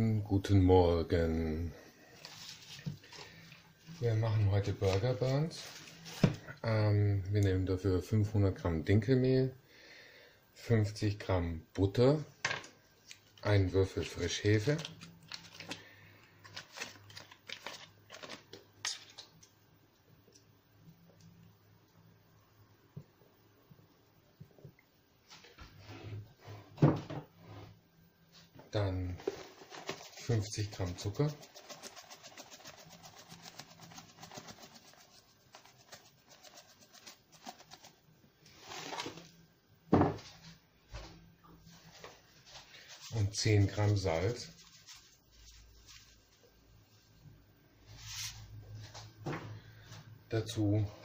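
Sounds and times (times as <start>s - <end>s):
wrapper crinkling: 14.7s - 19.2s.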